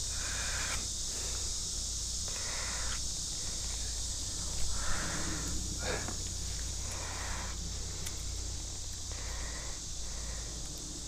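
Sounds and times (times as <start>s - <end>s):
insects droning: 0.0s - 11.0s.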